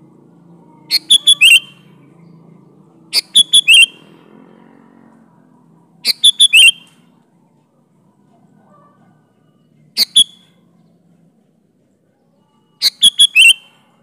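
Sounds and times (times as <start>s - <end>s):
bulbul singing: 0.0s - 4.3s, 5.8s - 7.2s, 9.4s - 11.2s, 12.2s - 14.0s.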